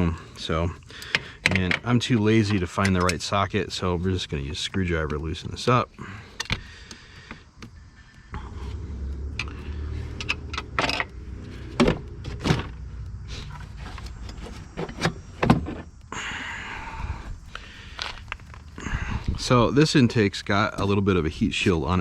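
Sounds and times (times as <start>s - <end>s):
low steady hum: 0.0s - 22.0s
clicks and knocks: 9.3s - 12.8s.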